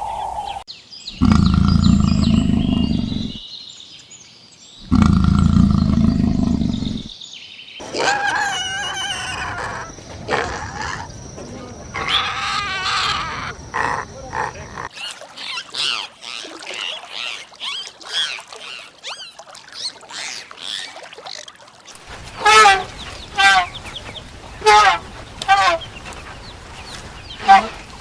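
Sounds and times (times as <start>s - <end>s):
loud animal call: 7.8s - 14.9s, 22.1s - 28.0s
loud falling poultry calls: 7.8s - 14.9s, 22.0s - 28.0s.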